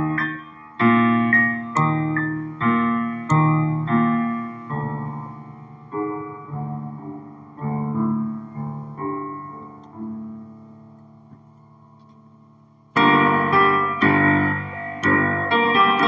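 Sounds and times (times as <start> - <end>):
soft piano chords: 0.0 - 16.0.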